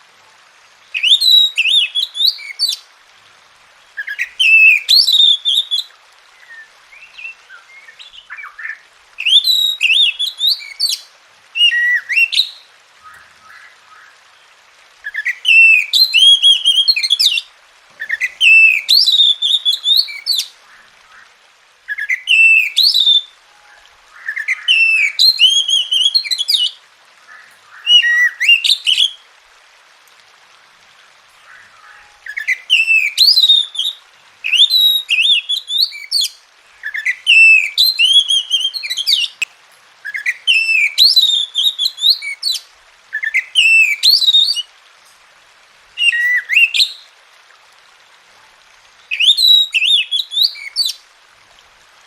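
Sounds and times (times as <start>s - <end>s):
bird singing whistled phrases: 1.0s - 2.8s, 4.0s - 14.1s, 15.0s - 17.4s, 18.0s - 20.5s, 21.9s - 26.8s, 27.8s - 29.2s, 31.5s - 44.7s, 46.0s - 47.0s, 49.1s - 51.0s.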